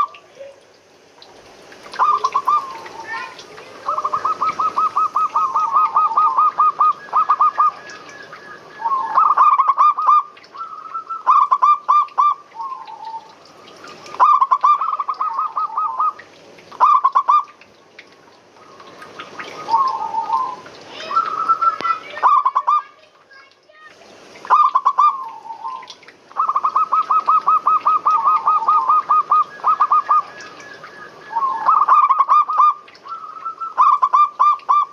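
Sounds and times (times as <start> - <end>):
doves cooing: 1.8 - 17.6, 18.6 - 22.9, 24.4 - 34.9.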